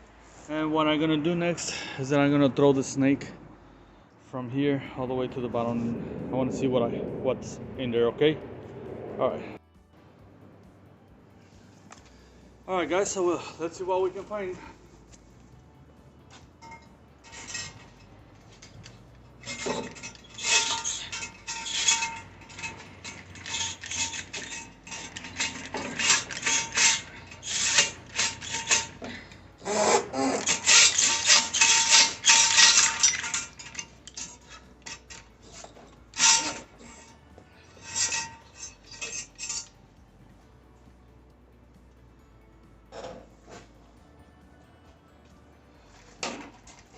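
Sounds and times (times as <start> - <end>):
drain snake cable scraping and rattling: 16.3 - 39.8, 45.8 - 46.9.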